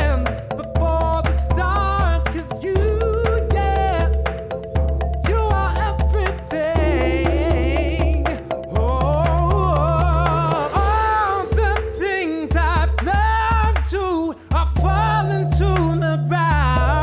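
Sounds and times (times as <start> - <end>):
person singing: 0.0 - 4.6, 5.2 - 17.0
held bass notes: 0.0 - 12.1, 14.8 - 17.0
percussive strikes: 0.0 - 17.0.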